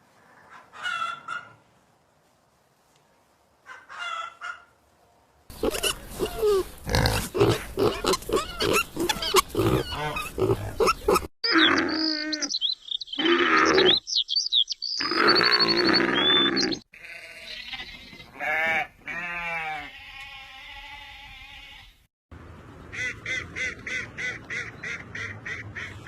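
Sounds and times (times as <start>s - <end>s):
rapid animal grunting: 5.5s - 11.9s
rough animal calls: 5.5s - 14.1s, 15.0s - 17.9s
high chirping calls: 10.8s - 16.8s.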